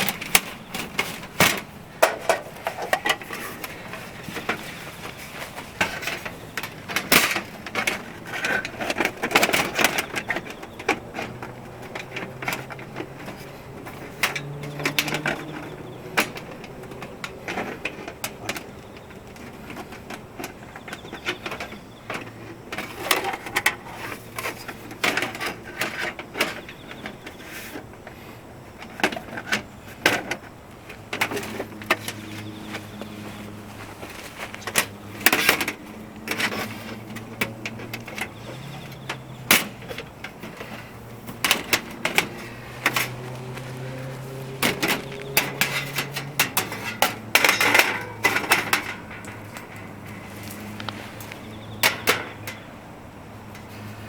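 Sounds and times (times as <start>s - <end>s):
metallic clinks and knocks: 31.1s - 52.8s.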